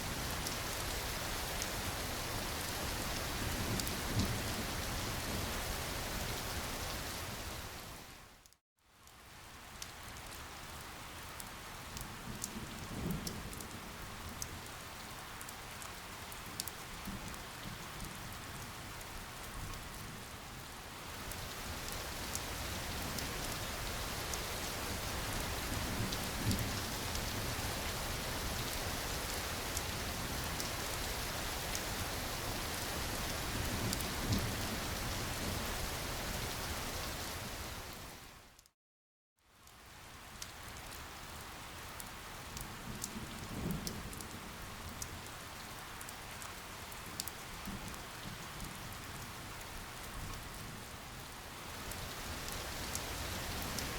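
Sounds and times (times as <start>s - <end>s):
steady rain falling: 0.0s - 38.7s, 39.4s - 53.9s
rain drop ticks: 8.4s - 10.5s, 15.4s - 18.2s, 42.0s - 45.2s, 46.0s - 48.8s, 51.8s - 53.9s.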